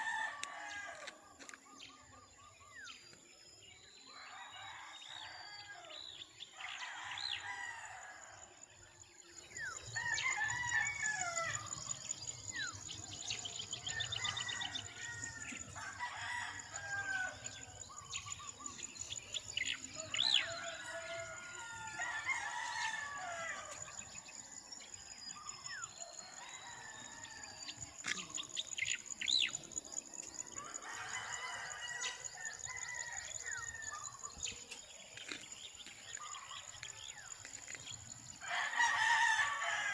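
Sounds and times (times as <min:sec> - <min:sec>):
roosters crowing: 0:00.0 - 0:01.2, 0:09.9 - 0:11.8, 0:13.4 - 0:17.8, 0:20.0 - 0:23.9, 0:30.6 - 0:33.8, 0:38.3 - 0:39.9.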